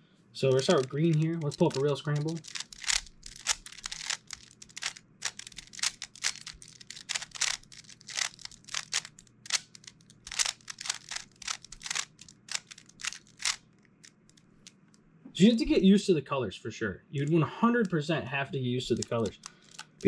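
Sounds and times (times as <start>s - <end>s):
puzzle cube turning clicks: 0.4s - 15.0s, 18.8s - 20.0s.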